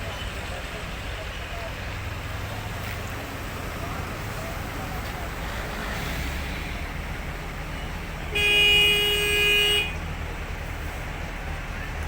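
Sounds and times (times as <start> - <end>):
road noise: 0.0 - 12.0
vehicle horn blast: 8.3 - 10.0.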